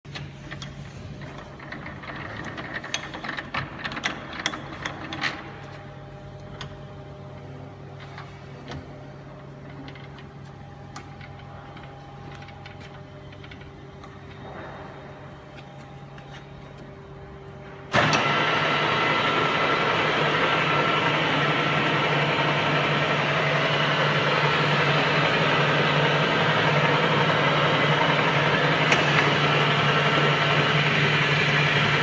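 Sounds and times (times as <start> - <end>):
sharp clicks and knocks: 0.1 - 6.9
lathe motor hum with gear whine: 5.5 - 32.0.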